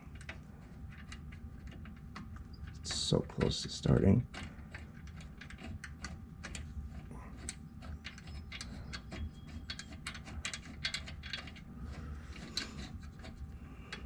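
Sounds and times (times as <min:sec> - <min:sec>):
small metallic clicks: 0:07.4 - 0:11.7.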